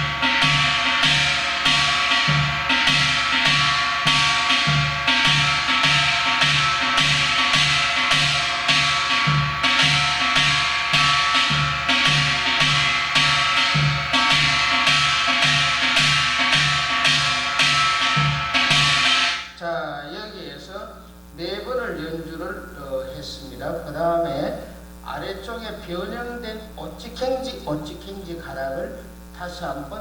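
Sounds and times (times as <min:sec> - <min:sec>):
metallic ringing: 0:00.0 - 0:19.6.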